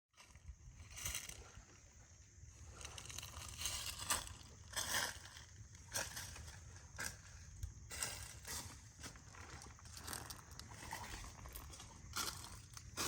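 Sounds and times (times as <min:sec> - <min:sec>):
footsteps crunching on a trail: 0:02.5 - 0:13.0.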